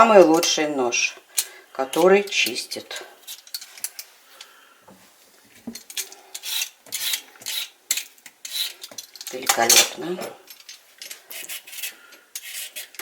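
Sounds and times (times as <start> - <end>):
vegetable peeler scraping: 6.4 - 7.7, 8.4 - 8.8, 11.2 - 13.0.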